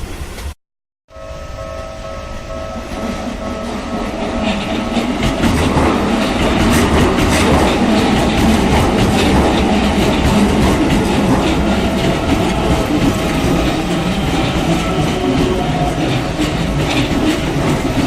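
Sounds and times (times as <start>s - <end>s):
electric train passing: 1.1s - 18.0s
wheels clattering over rail joints: 3.0s - 18.0s.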